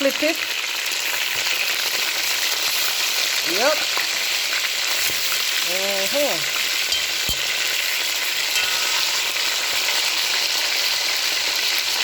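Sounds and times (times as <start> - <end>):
chicken frying in hot oil: 0.0 - 12.0
utensil knocking against pot: 6.9 - 7.7, 8.6 - 9.1.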